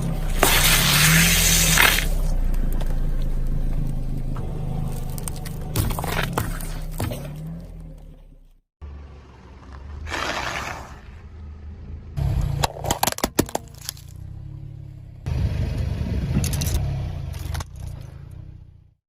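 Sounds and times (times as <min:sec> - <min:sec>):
tyre crushing brittle objects: 0:00.0 - 0:02.9, 0:04.7 - 0:07.6, 0:12.6 - 0:14.2
car low rumble: 0:00.0 - 0:19.0.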